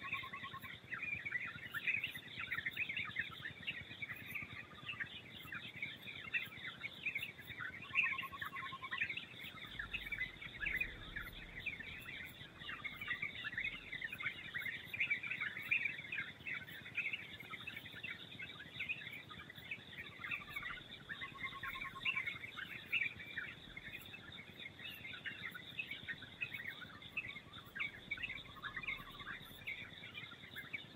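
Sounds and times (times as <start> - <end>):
birds chirping and twittering: 0.0 - 30.9
low bird trills: 9.6 - 14.9.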